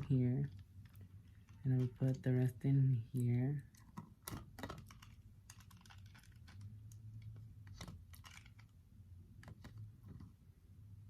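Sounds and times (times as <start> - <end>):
low steady hum: 0.0 - 11.0
glue mixture pouring: 3.7 - 8.7.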